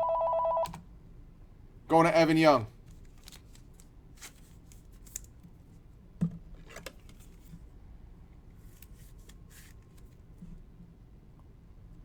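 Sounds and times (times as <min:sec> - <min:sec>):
cards scraping and rustling: 0:02.9 - 0:05.3.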